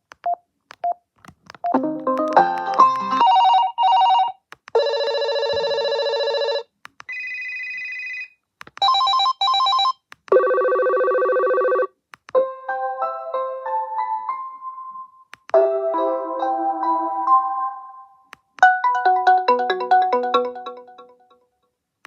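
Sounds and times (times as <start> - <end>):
phone ringtones: 2.8 - 11.9.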